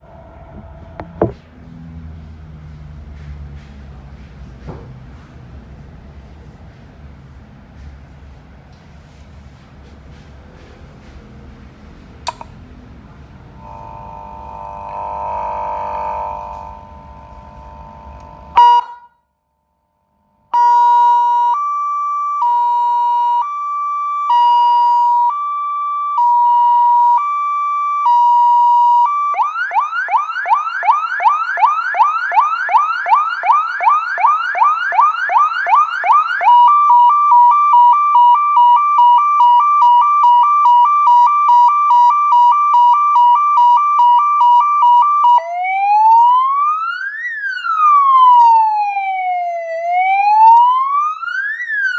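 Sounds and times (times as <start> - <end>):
electronic police siren: 0.0 - 1.4, 13.6 - 19.2, 20.6 - 51.9.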